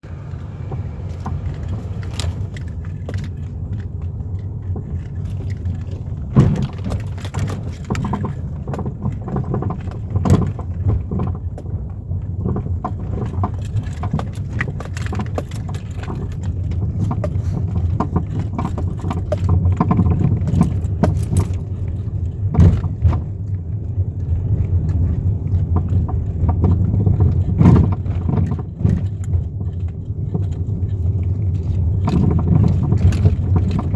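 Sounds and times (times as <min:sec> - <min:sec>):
car road rumble: 0:00.0 - 0:33.9
suspension knocking: 0:00.1 - 0:23.5.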